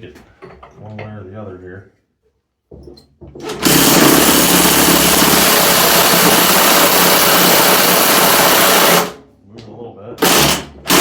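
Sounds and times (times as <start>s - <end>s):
cordless impact wrench running: 3.4s - 9.2s, 10.2s - 11.0s.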